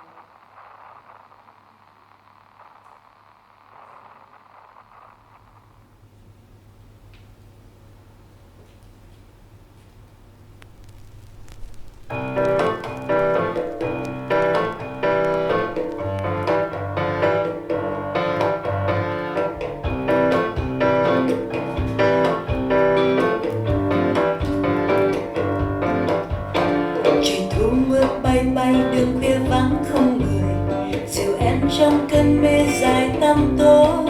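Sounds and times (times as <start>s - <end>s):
vinyl surface ticks: 10.5s - 29.0s
piano-led music: 12.1s - 34.0s.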